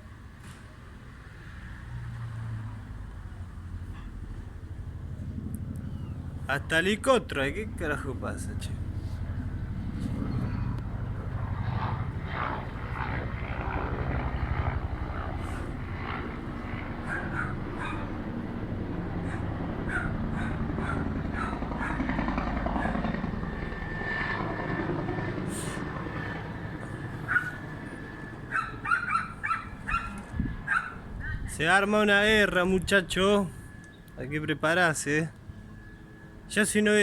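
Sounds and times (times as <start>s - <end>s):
helicopter rotor rumble: 2.6s - 37.0s
dog barking: 17.0s - 18.1s, 19.2s - 22.1s, 22.8s - 23.0s, 27.3s - 27.6s, 28.5s - 31.0s.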